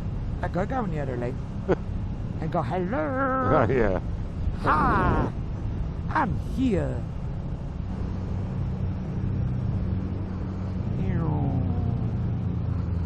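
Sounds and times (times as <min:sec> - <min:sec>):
person calling out: 0:02.6 - 0:03.8, 0:04.6 - 0:05.4.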